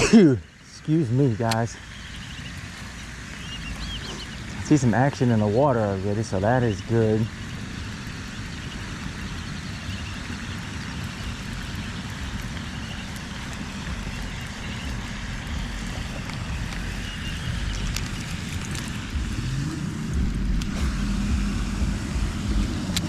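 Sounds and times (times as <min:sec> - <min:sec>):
faint chirps: 0:00.0 - 0:23.0
wind buffeting microphone: 0:00.8 - 0:23.0
sharp clicks: 0:10.3 - 0:23.0.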